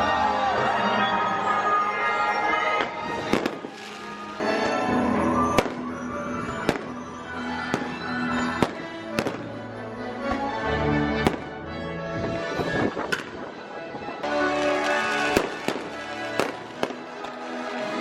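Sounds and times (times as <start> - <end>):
christmas song over loudspeakers: 0.0 - 18.0
fireworks bursting: 2.7 - 9.6, 14.2 - 18.0.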